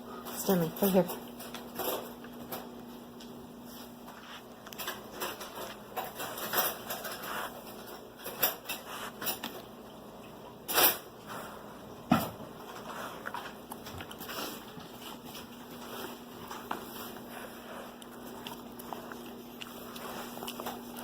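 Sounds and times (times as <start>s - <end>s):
dog sniffing: 7.1s - 7.8s, 8.7s - 9.4s.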